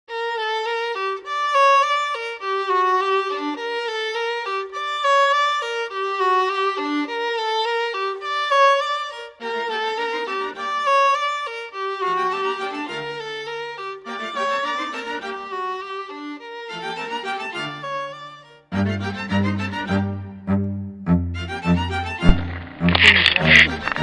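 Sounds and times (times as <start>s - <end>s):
violin melody: 0.1s - 24.0s
low string notes: 17.0s - 24.0s.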